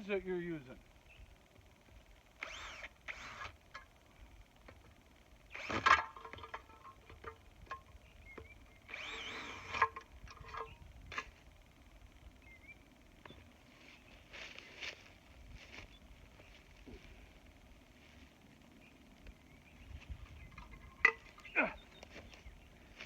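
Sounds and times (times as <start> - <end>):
cordless drill running: 2.1 - 4.0, 4.7 - 7.3, 8.3 - 11.5.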